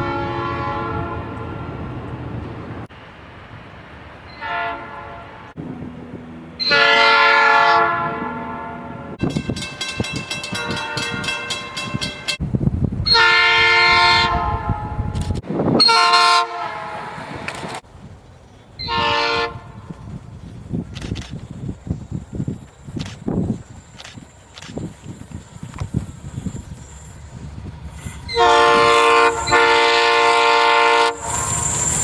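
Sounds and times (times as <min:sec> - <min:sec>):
train horn blasts: 0:00.0 - 0:02.0, 0:04.3 - 0:05.6, 0:06.3 - 0:09.6, 0:10.4 - 0:12.2, 0:13.1 - 0:17.6, 0:18.8 - 0:19.9, 0:28.0 - 0:32.0
train wheels clattering: 0:09.2 - 0:12.4.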